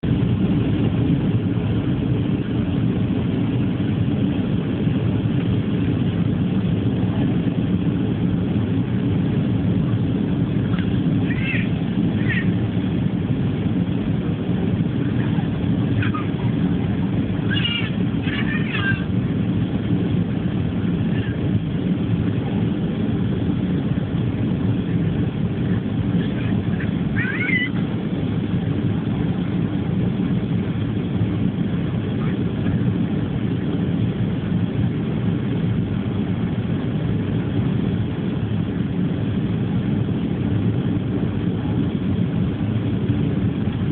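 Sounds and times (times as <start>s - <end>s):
airliner cabin roar: 0.0s - 43.9s
jet engines rumbling: 0.0s - 43.9s.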